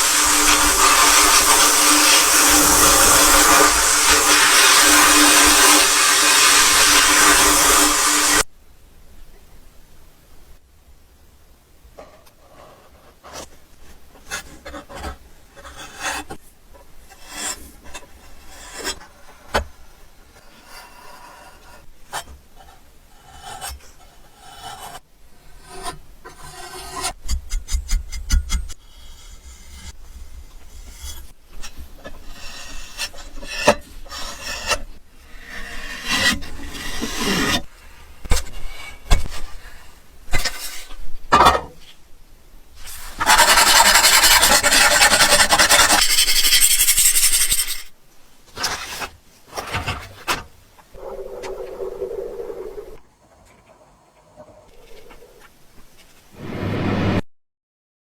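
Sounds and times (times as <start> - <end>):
hand sanding scraping strokes: 42.8 - 47.8.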